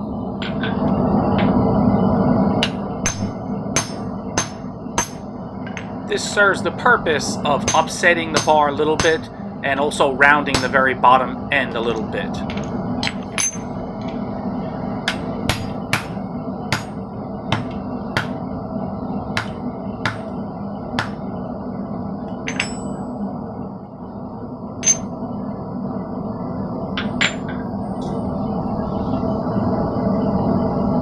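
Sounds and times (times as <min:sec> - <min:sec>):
steady hum: 0:00.0 - 0:31.0
hammer striking steel on anvil: 0:02.6 - 0:05.9, 0:07.6 - 0:09.3, 0:10.5 - 0:10.8, 0:15.1 - 0:18.4, 0:19.4 - 0:20.2, 0:21.0 - 0:21.2, 0:22.5 - 0:23.0, 0:24.8 - 0:25.1.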